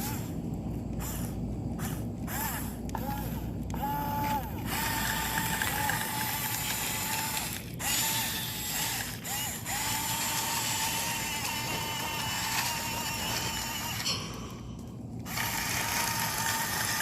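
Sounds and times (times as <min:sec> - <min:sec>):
toy excavator motors whining: 0:00.0 - 0:14.6, 0:15.2 - 0:17.0.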